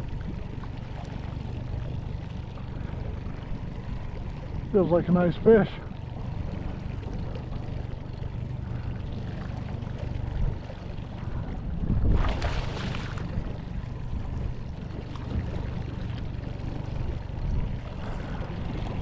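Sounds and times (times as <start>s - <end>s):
boat motor running: 0.0s - 19.0s
wind noise: 11.6s - 13.4s.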